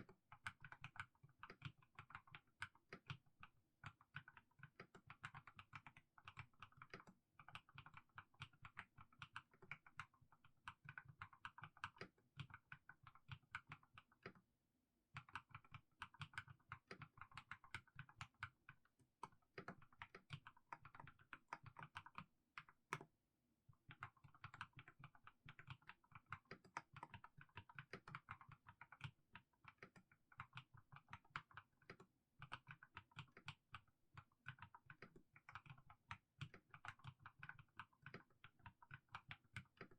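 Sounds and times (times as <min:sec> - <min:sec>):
mechanical keyboard typing: 0:15.2 - 0:18.6, 0:19.2 - 0:23.1, 0:23.9 - 0:39.9.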